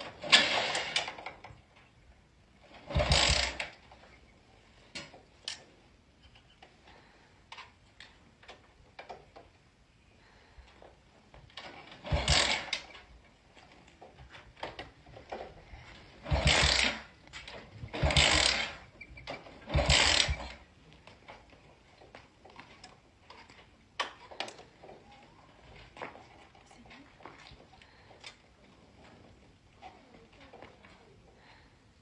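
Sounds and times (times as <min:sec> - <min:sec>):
engine cranking without starting: 0:00.0 - 0:01.7, 0:02.6 - 0:04.1, 0:11.5 - 0:22.1.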